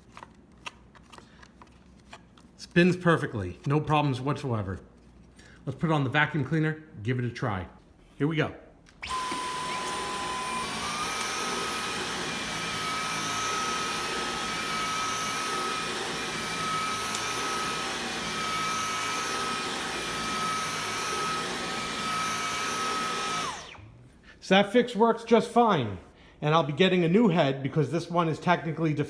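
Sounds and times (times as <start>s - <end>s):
cordless vacuum whining: 9.0s - 24.1s.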